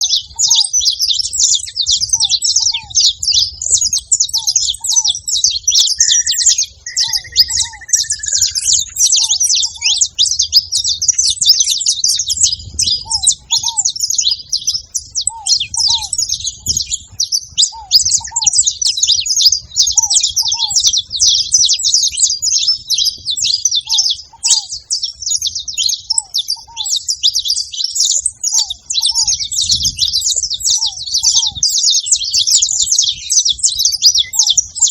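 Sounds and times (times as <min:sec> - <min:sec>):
finches chirping and chattering: 0:00.0 - 0:34.9
whistled bird note: 0:05.7 - 0:10.0
low two-note bird call: 0:06.0 - 0:08.9.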